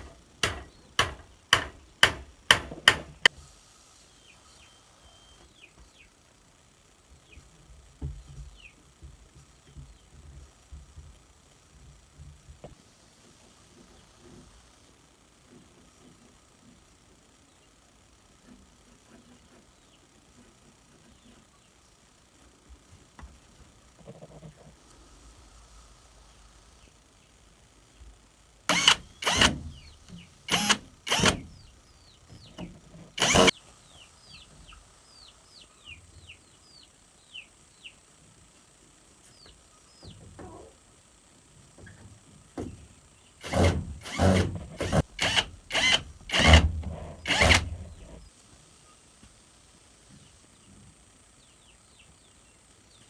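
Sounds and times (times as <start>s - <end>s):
sharp knocks: 0.0s - 3.3s.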